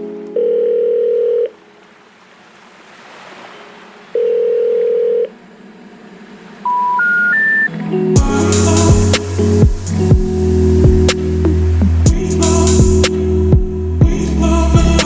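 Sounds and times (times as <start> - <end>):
telephone ringback tone: 0.3 - 1.6, 4.2 - 5.3, 6.6 - 7.7
faint hiss: 8.2 - 13.4.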